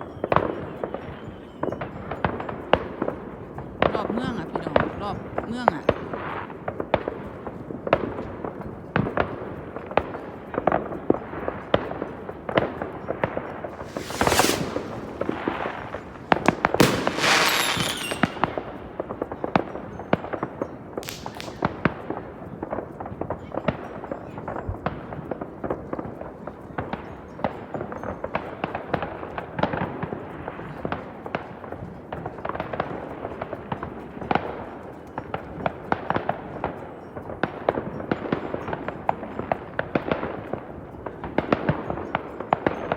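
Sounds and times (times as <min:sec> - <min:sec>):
hissing firework bursts: 0:13.8 - 0:18.7, 0:21.0 - 0:21.7
fireworks bangs and pops: 0:13.8 - 0:19.6, 0:21.0 - 0:22.0.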